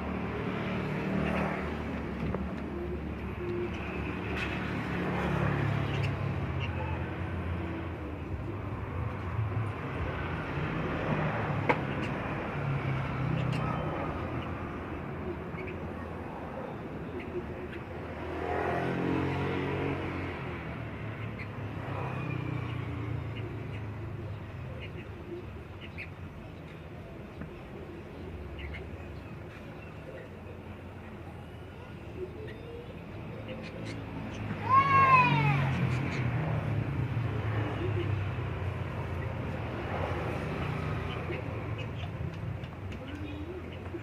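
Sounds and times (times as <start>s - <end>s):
road traffic rumble: 0.0s - 44.0s
vehicle engine passing: 18.1s - 21.1s.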